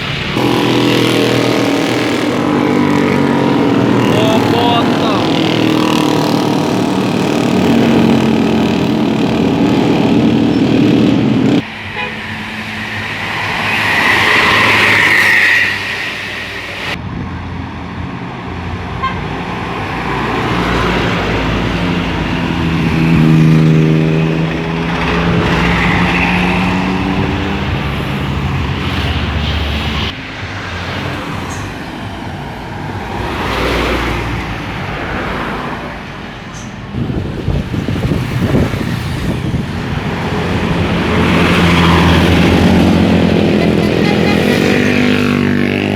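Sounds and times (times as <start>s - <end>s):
bus engines and road noise: 0.0s - 45.9s
multi-tone musical bus horns: 0.4s - 13.6s, 19.0s - 19.5s, 41.2s - 45.9s.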